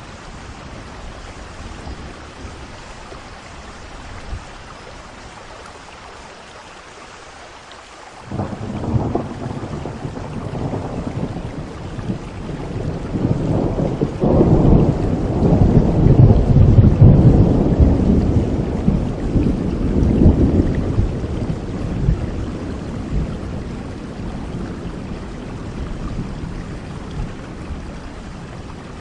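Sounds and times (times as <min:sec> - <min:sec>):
steady rain: 0:00.0 - 0:29.0
rolling thunder: 0:08.3 - 0:29.0.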